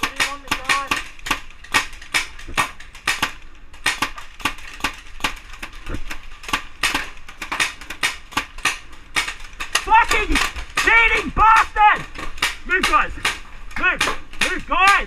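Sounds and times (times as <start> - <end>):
paintball gun popping: 0.0 - 11.0.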